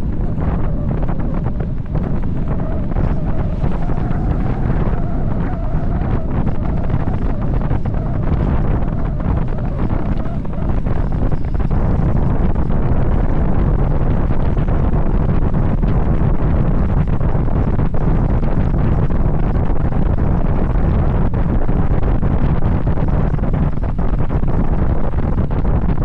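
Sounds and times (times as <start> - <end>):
faint wavering hum: 0.0 - 22.6
wind buffeting microphone: 0.0 - 26.0.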